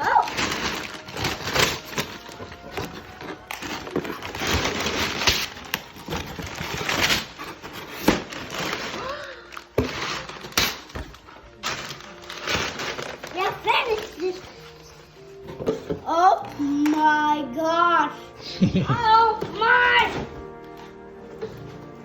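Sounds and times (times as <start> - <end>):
packaging ripping and crinkling: 0.0 - 14.9.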